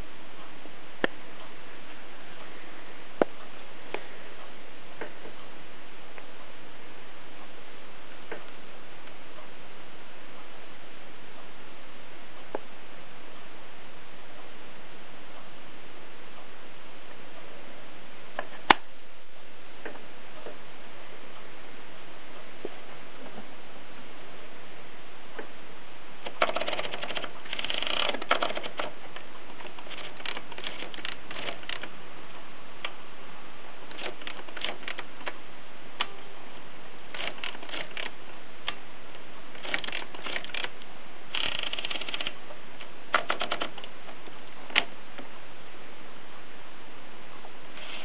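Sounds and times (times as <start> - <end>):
steady background hiss: 0.0 - 48.0
typewriter key strikes: 26.3 - 28.9, 43.2 - 43.9.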